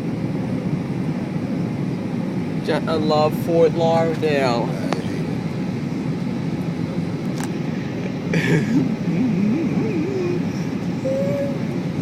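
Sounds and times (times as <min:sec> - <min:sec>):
airliner cabin engine rush: 0:00.0 - 0:12.0
wavering hummed tone: 0:09.1 - 0:12.0.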